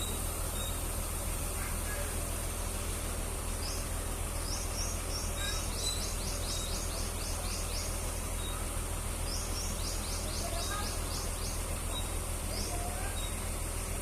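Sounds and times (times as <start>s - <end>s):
small bird chirping: 0.0s - 0.9s, 3.5s - 13.5s
steady low hum: 0.0s - 14.0s.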